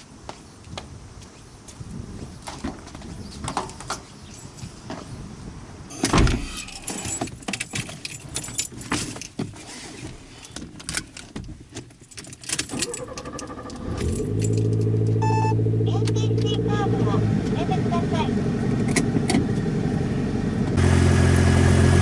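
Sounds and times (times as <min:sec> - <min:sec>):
handling clicks and knocks: 0:06.0 - 0:09.6, 0:10.5 - 0:13.5
keys jangling: 0:06.7 - 0:09.4
car engine starting and idling: 0:12.7 - 0:22.0
short beep: 0:15.2 - 0:15.6.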